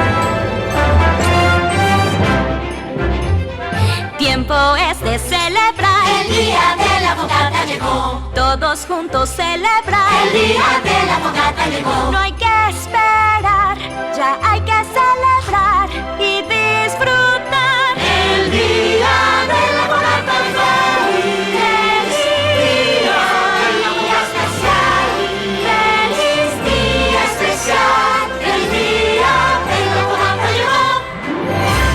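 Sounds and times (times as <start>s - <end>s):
instrumental accompaniment: 0.0s - 7.8s, 16.4s - 31.9s
choir singing: 5.6s - 8.3s, 9.8s - 12.4s, 17.5s - 31.9s.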